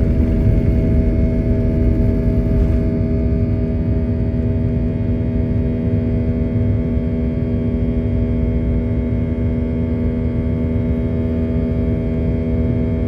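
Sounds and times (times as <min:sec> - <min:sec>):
airliner cabin rumble: 0:00.0 - 0:06.2, 0:09.6 - 0:13.0.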